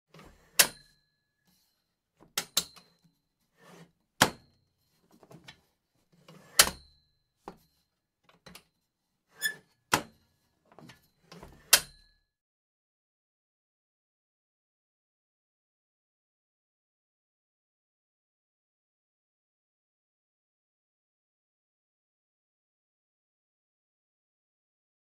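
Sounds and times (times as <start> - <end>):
table rattling and scraping: 3.6 - 6.8
folding table knocks and clatters: 3.7 - 4.6.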